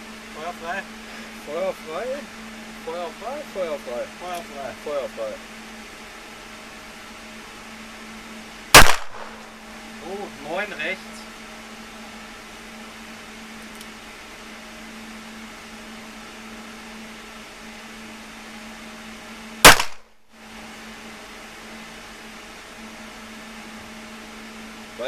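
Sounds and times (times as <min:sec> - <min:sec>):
faint steady hum: 0:00.0 - 0:25.0
handgun shot: 0:08.8 - 0:09.5, 0:19.7 - 0:20.1.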